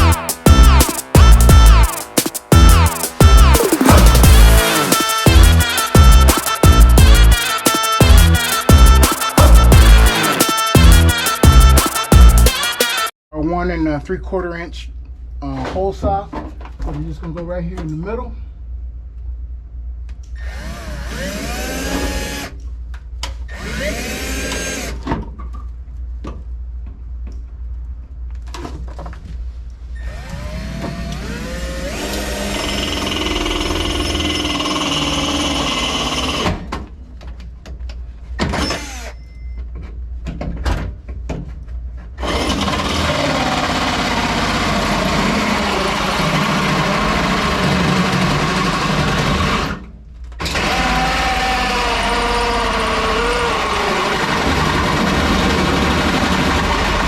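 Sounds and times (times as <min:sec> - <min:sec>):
power drill motor whining: 0:30.0 - 0:36.4, 0:38.6 - 0:39.2, 0:50.4 - 0:57.0.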